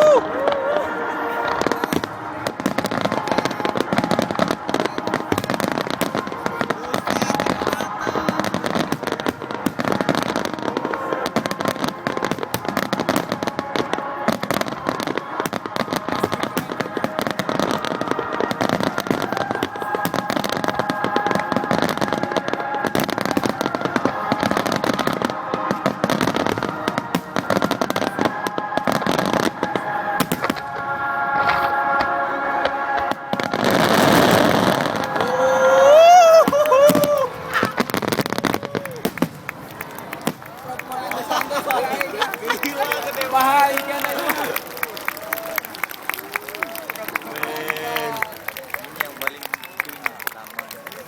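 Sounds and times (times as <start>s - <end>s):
fireworks bangs and crackling: 0.0s - 51.0s.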